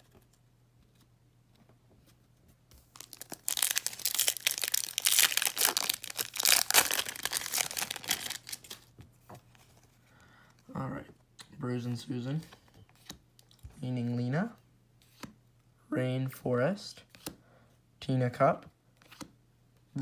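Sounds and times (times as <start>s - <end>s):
foil wrapper tearing and crinkling: 2.9s - 8.8s.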